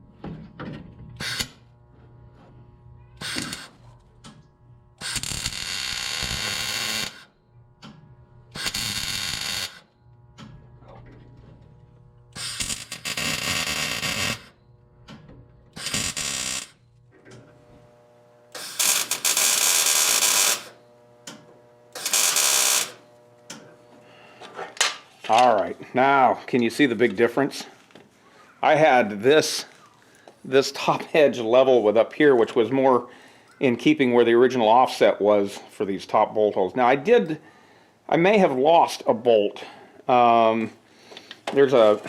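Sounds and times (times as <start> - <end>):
power tool running: 0.2 - 24.9.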